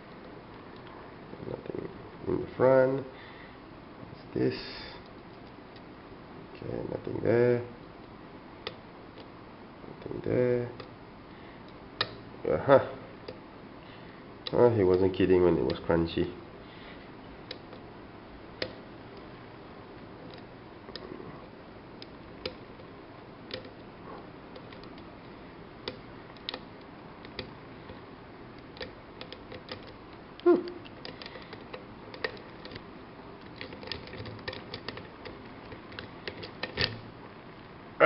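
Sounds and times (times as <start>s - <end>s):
lock pick metallic clicks: 23.5s - 23.9s, 28.6s - 30.2s, 30.8s - 37.1s.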